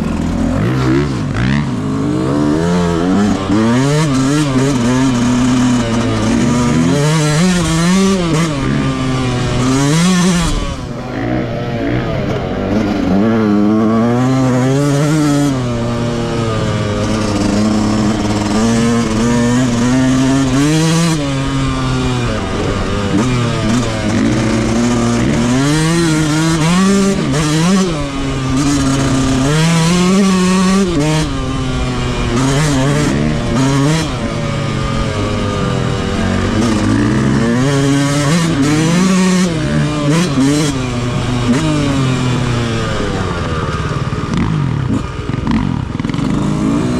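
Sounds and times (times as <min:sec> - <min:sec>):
two-stroke dirt bike engine revving: 0:00.0 - 0:46.9.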